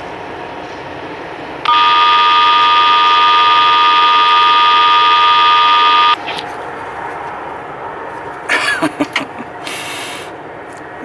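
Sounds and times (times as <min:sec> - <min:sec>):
street hiss: 0:00.0 - 0:11.0
two-pitch electronic tone: 0:01.7 - 0:06.2.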